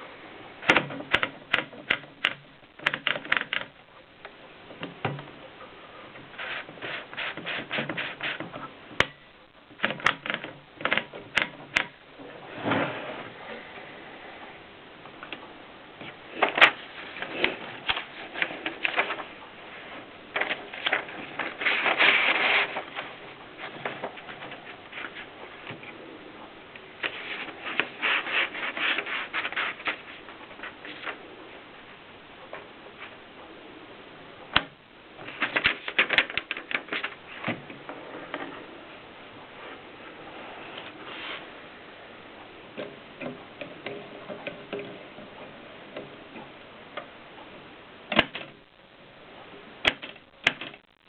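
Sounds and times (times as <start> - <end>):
typewriter clacking: 0.6 - 3.7, 9.8 - 11.9.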